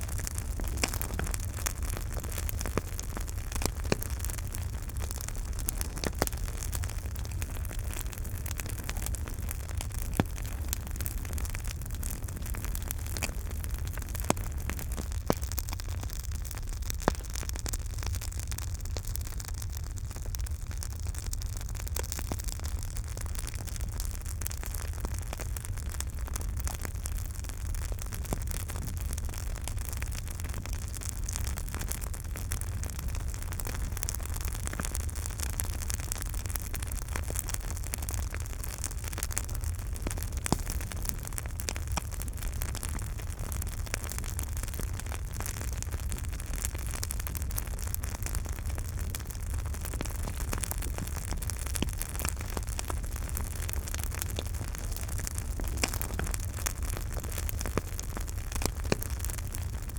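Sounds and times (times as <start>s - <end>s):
flames rumbling and hissing: 0.0s - 59.9s
wood crackling and popping: 0.0s - 59.9s.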